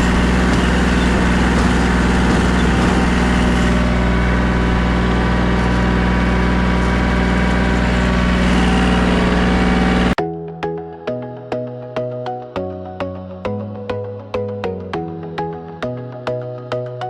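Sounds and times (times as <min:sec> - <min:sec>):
diesel tractor engine running: 0:00.0 - 0:10.2.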